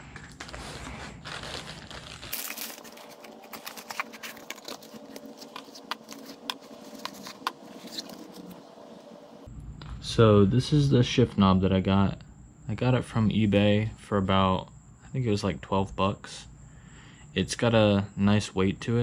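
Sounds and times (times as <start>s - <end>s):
clicks and crinkling of handling: 0.1s - 8.6s.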